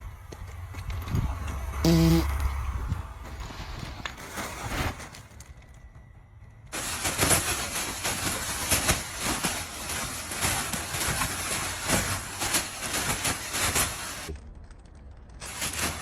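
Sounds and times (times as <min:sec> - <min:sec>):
costume rustling and crackling: 0:00.3 - 0:16.0
blower fan hissing and whining: 0:06.6 - 0:14.3.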